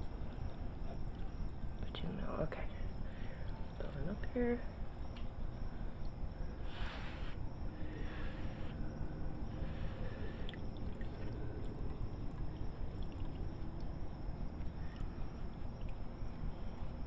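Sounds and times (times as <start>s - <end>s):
pump low hum: 0.0s - 17.0s
water pouring and trickling: 9.4s - 17.0s.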